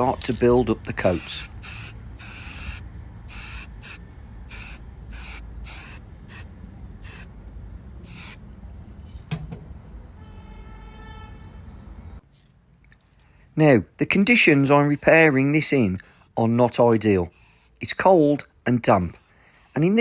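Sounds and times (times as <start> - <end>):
aerosol spray can hissing: 1.1 - 7.3, 8.0 - 8.4, 14.5 - 16.4, 17.3 - 17.9, 19.0 - 20.0.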